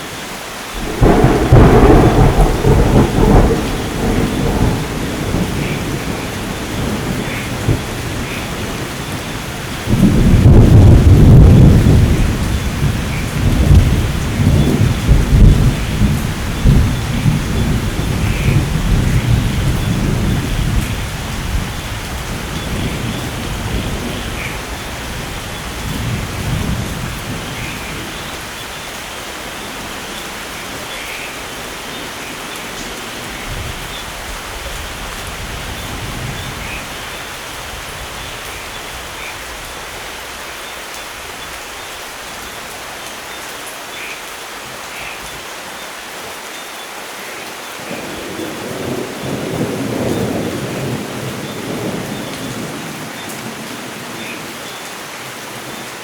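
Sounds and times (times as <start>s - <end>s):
steady rain: 0.0s - 56.0s
rolling thunder: 0.8s - 28.6s, 47.9s - 54.0s.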